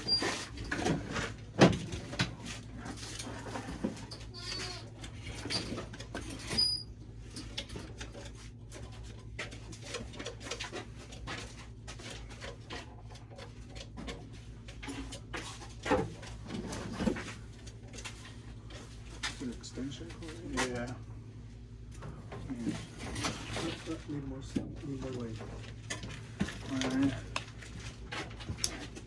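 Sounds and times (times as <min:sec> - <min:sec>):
clicks and knocks of handling: 0:21.9 - 0:29.0.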